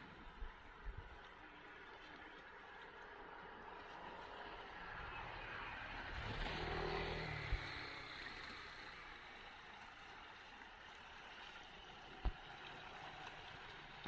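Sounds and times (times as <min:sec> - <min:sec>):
outdoor background noise: 0:00.0 - 0:14.0
vehicle engine passing by: 0:04.6 - 0:10.1.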